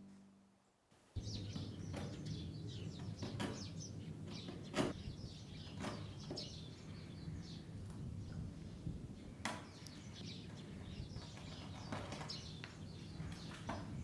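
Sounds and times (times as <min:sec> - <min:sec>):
steady low rumble: 0:01.2 - 0:05.6
small birds chirping: 0:01.2 - 0:14.0.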